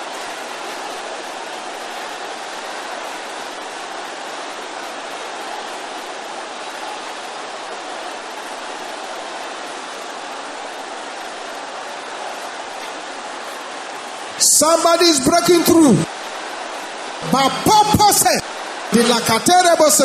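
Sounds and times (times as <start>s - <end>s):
congregation praying aloud: 10.2s - 20.0s.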